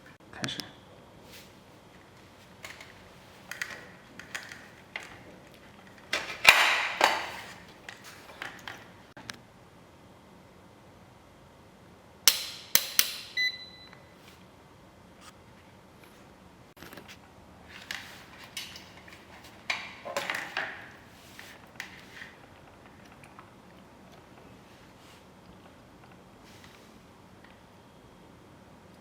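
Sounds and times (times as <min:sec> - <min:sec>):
hard objects clicking and knocking: 0:02.6 - 0:09.0
short beep: 0:13.4 - 0:14.0.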